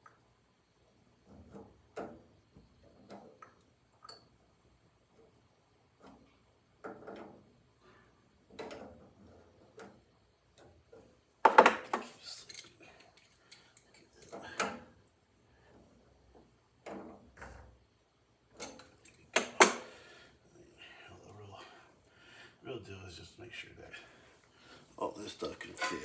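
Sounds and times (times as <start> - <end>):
metal clanks and rattles: 25.6 - 26.0.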